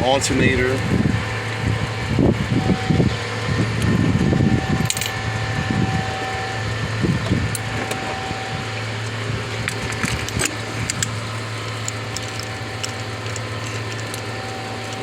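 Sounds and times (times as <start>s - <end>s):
steady low hum: 0.0s - 15.0s
metal tools clinking: 4.8s - 5.3s, 9.6s - 15.0s.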